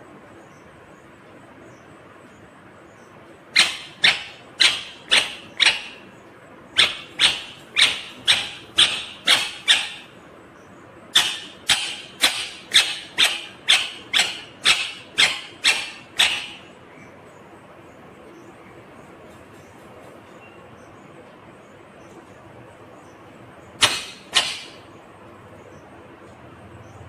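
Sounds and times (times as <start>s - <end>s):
parakeet squawking: 3.5s - 6.1s, 6.7s - 10.2s, 11.1s - 17.1s, 23.8s - 24.9s.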